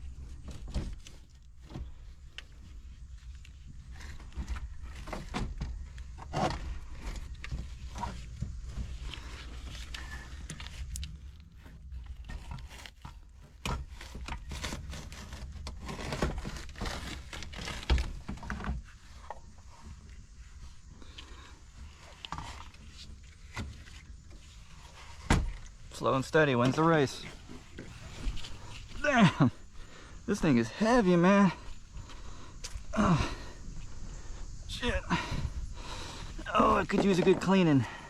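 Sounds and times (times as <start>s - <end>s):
knocks and clunks of engine parts: 36.2s - 38.0s.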